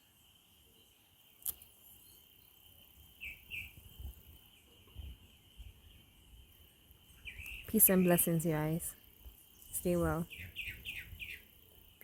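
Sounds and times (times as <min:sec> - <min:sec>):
high insect drone: 0:00.0 - 0:12.0
bird chirps: 0:00.8 - 0:05.1, 0:07.1 - 0:08.8, 0:09.5 - 0:11.6.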